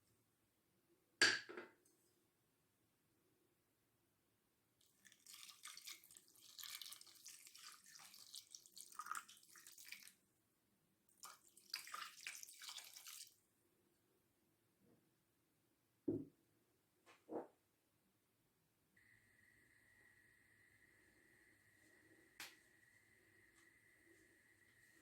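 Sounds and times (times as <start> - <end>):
water pouring: 4.8 - 10.2, 11.2 - 13.4.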